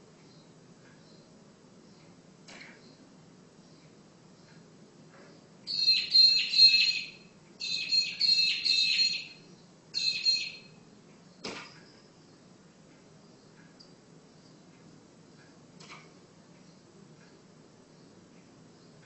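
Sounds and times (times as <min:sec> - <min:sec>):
bird high chattering: 0:05.7 - 0:09.4, 0:10.0 - 0:10.7.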